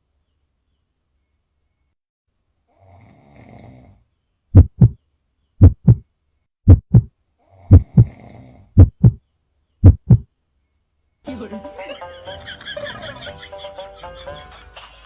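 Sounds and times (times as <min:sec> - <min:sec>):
person snoring faintly: 0:02.7 - 0:04.0, 0:07.4 - 0:08.8
heartbeat thumping: 0:04.6 - 0:05.0, 0:05.6 - 0:06.0, 0:06.7 - 0:07.1, 0:07.7 - 0:08.1, 0:08.8 - 0:09.2, 0:09.8 - 0:10.3.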